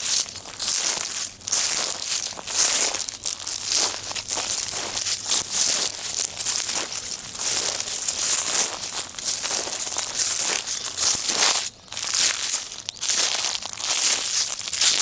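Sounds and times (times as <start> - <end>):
footsteps crunching through dry leaves: 0.0 - 15.0.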